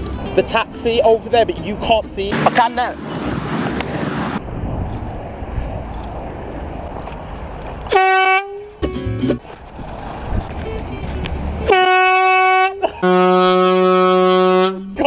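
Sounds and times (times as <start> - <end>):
car road and wind noise: 0.0 - 13.5
air horn blasts: 7.9 - 8.6, 10.6 - 14.9.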